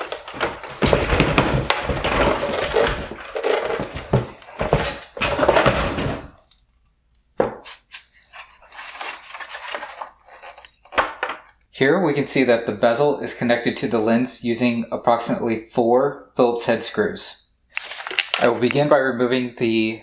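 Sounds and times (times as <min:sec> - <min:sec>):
plastic clattering: 0:00.0 - 0:11.7, 0:17.8 - 0:18.8
plastic parts clicking and scraping: 0:00.0 - 0:11.7.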